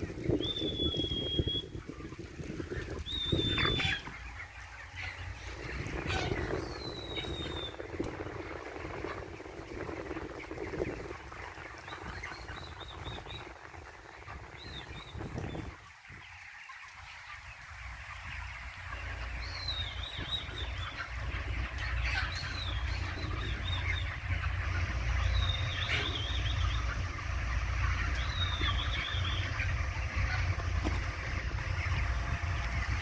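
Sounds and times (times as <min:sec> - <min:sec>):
high wavering bird calls: 0:00.0 - 0:01.8, 0:03.0 - 0:07.8, 0:18.8 - 0:33.0
constant low rumble: 0:00.0 - 0:33.0
poultry chatter: 0:00.0 - 0:33.0.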